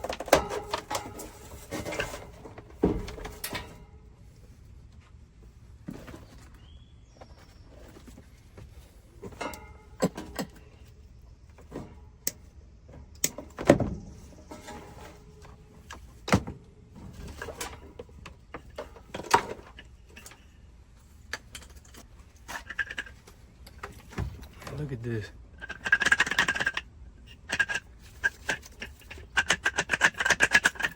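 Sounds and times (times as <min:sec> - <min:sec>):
tools clanking on metal parts: 0:00.0 - 0:04.0, 0:08.8 - 0:12.4, 0:13.0 - 0:20.6.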